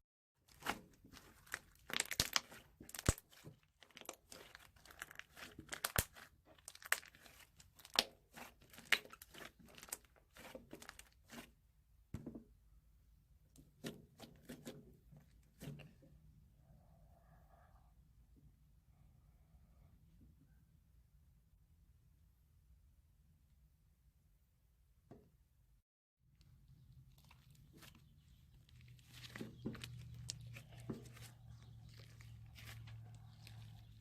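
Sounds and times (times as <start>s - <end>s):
slime crackling and popping: 0.5s - 11.5s.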